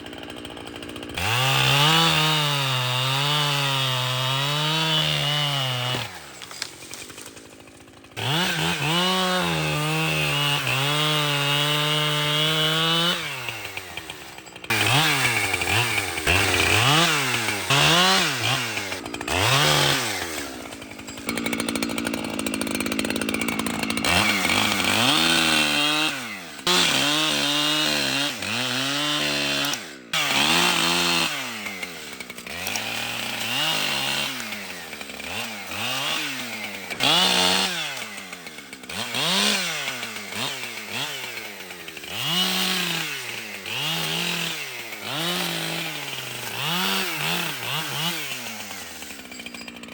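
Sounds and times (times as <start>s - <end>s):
chainsaw engine revving: 0.0s - 49.9s.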